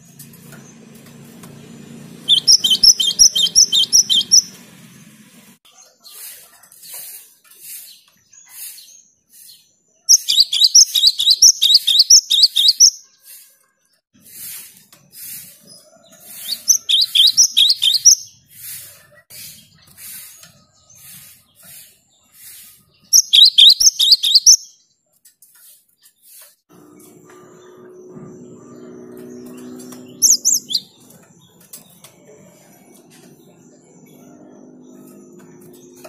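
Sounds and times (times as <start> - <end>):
bird singing rapid high notes: 1.7 - 5.2, 10.0 - 13.3, 16.4 - 18.5, 22.5 - 24.9, 27.3 - 31.6
faint repeated bird calls: 2.3 - 5.1, 5.7 - 14.0, 15.7 - 36.0.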